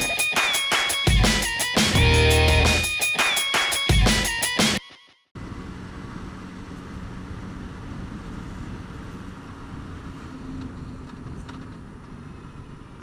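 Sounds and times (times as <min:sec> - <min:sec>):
intro music with heavy guitar: 0:00.0 - 0:04.9.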